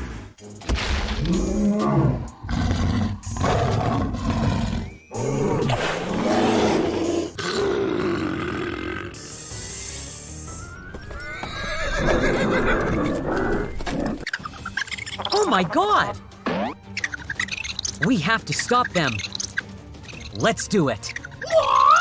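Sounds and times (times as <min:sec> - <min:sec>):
background music: 0:00.0 - 0:22.0
dinosaur roars: 0:01.2 - 0:09.2.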